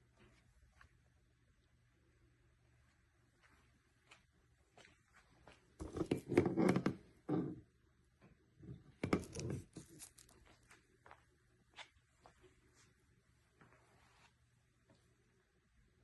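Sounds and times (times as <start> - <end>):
rustling and scraping of packaging: 9.0 - 10.7.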